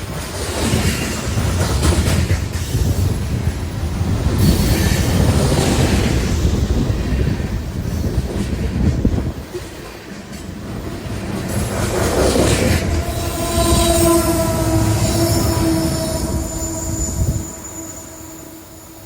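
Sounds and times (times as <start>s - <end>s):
wind buffeting microphone: 0.0s - 17.8s
freight train rolling: 0.0s - 19.0s
train wheels squealing: 12.3s - 19.0s.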